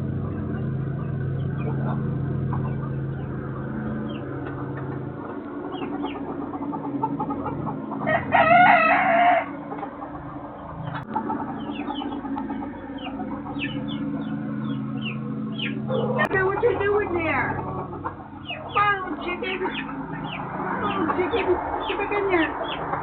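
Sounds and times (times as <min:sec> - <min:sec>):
chickens clucking: 0:00.0 - 0:23.0
steady low hum: 0:00.0 - 0:23.0
rooster crowing: 0:08.0 - 0:09.6.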